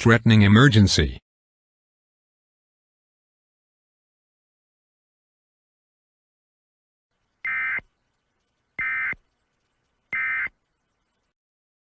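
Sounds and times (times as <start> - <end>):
buzzy two-tone data bursts: 7.4 - 7.8, 8.8 - 9.2, 10.1 - 10.6.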